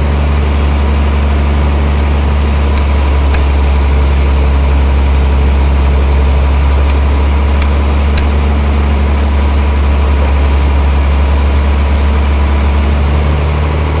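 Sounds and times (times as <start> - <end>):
sawmill machinery hum: 0.0 - 14.0
mechanical din: 2.0 - 12.9.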